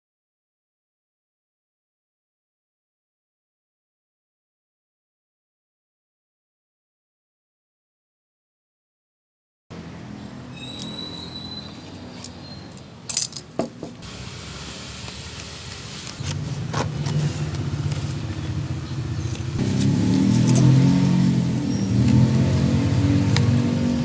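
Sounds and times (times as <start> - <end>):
scooter engine idling: 14.0 - 24.0.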